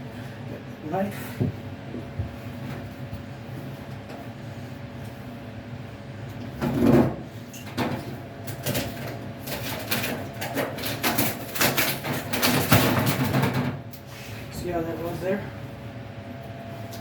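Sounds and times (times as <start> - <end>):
foil duct scraping and crinkling: 8.6 - 13.5.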